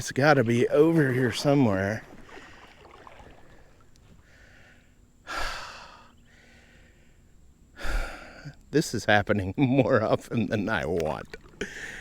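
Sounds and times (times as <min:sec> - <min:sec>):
faint breath: 0:03.7 - 0:08.6, 0:11.6 - 0:12.0
man sighing heavily: 0:04.2 - 0:07.0, 0:07.8 - 0:08.6.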